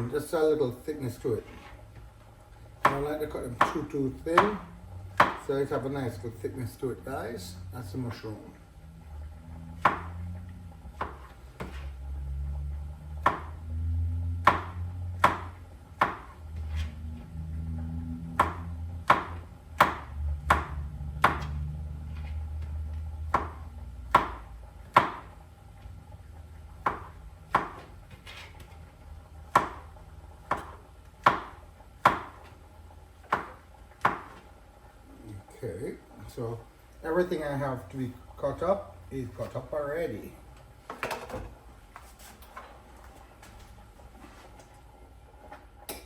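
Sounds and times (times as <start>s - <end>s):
knife chopping on cutting board: 2.8s - 4.6s, 5.2s - 5.5s, 9.8s - 10.1s, 11.0s - 11.8s, 13.2s - 13.6s, 14.4s - 16.4s, 18.4s - 21.6s, 23.3s - 25.3s, 26.8s - 27.9s, 29.5s - 32.5s, 33.2s - 34.4s.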